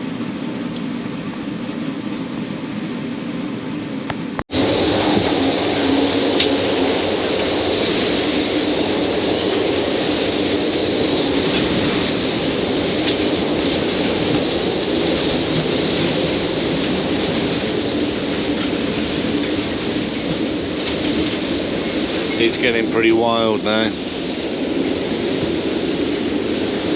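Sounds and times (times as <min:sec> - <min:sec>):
strong wind rushing: 0:00.0 - 0:26.9.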